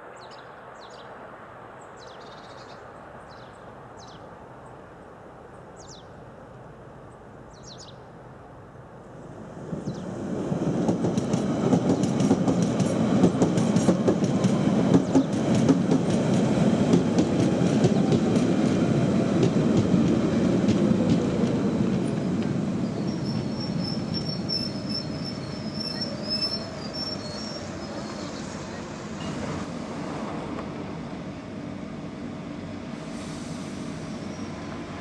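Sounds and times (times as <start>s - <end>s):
train wheels clattering over rail joints: 10.7s - 18.8s
high wheel or brake squeal: 23.1s - 28.5s.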